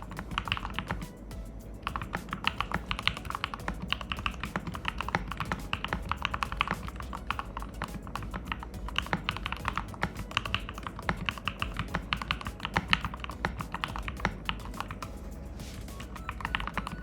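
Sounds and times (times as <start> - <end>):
mechanical keyboard typing: 1.9 - 15.2.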